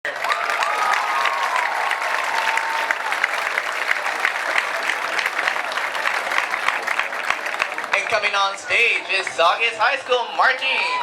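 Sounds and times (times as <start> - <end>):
crowd clapping: 0.0 - 11.0
held cheer: 0.1 - 7.0, 10.0 - 11.0.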